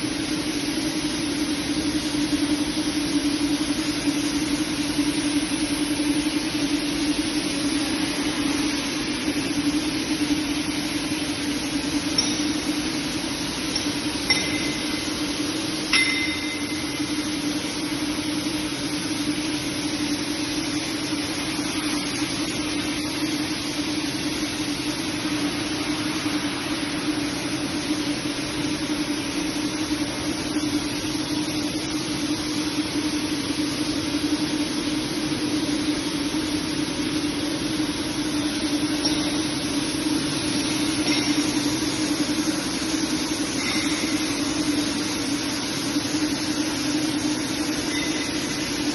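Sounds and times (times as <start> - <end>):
sharp metallic clinks: 13.8 - 14.9, 15.9 - 16.9.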